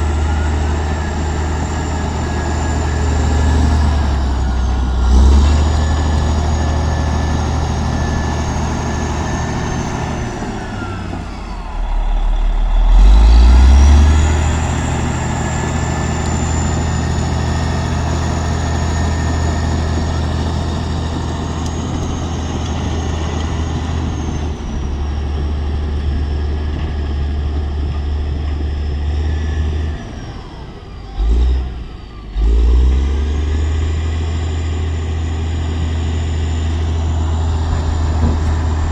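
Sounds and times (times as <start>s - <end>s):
heavy machinery engine running: 0.0s - 38.9s.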